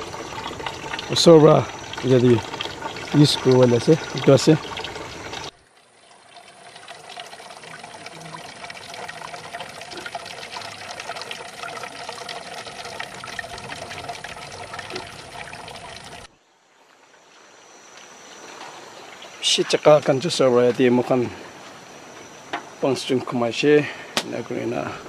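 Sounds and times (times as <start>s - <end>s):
water trickling and pouring: 0.0s - 16.3s.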